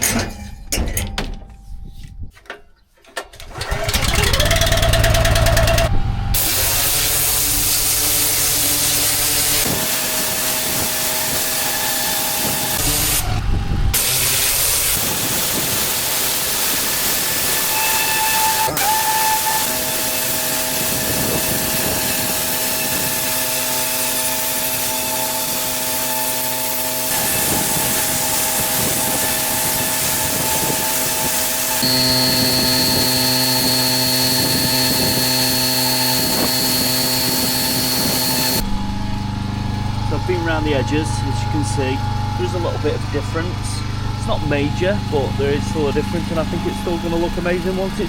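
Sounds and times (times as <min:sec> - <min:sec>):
pressure washer spraying: 0:06.4 - 0:13.2, 0:14.0 - 0:38.6
machine humming: 0:26.9 - 0:48.0.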